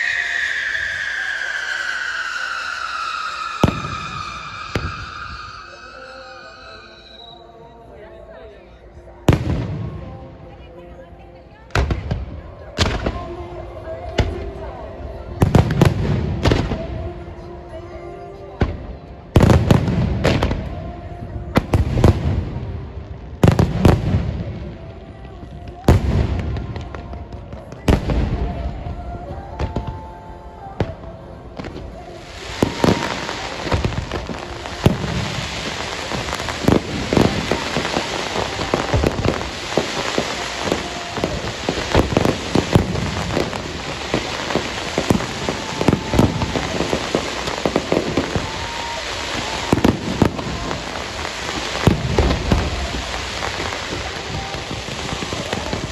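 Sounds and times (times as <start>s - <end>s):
firework crackle of rapid pops: 0.0s - 7.2s, 31.6s - 55.9s.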